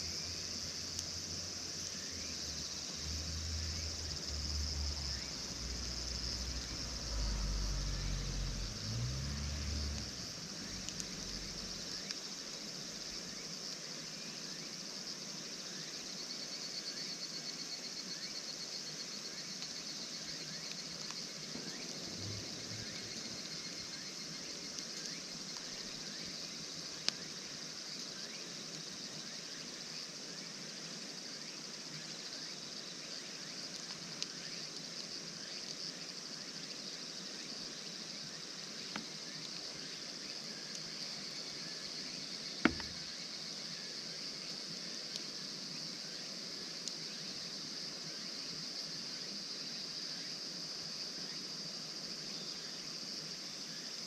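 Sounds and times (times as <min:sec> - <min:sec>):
campfire crackling: 0:00.0 - 0:14.0, 0:33.4 - 0:35.8, 0:37.3 - 0:43.5, 0:44.1 - 0:47.0
outdoor ambience hiss: 0:00.0 - 0:54.0.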